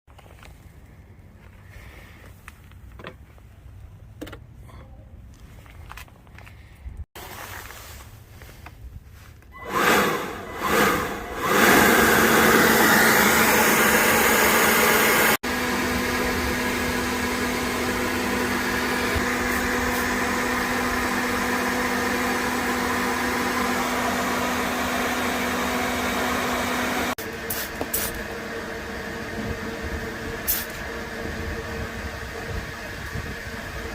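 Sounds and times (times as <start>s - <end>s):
vacuum cleaner motor with rushing air: 9.6s - 33.9s.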